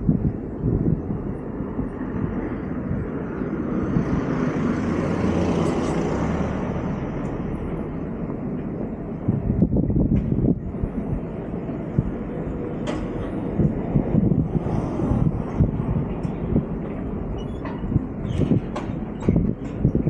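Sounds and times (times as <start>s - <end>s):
vehicle passing by: 2.2s - 8.4s.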